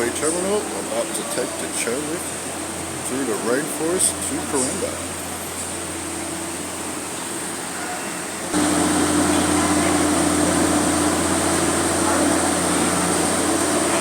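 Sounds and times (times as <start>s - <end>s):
cableway machinery humming: 0.0s - 14.0s.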